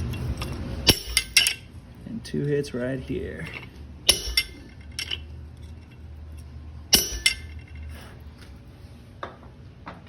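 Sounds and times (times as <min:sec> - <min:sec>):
hammer striking steel punch: 0:00.8 - 0:01.6, 0:04.1 - 0:04.7, 0:06.9 - 0:07.6.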